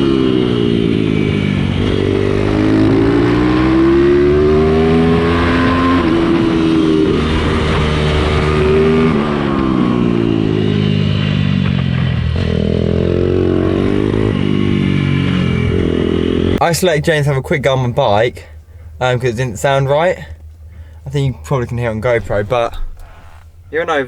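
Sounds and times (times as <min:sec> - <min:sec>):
off-road motorcycle engine revving: 0:00.0 - 0:16.7.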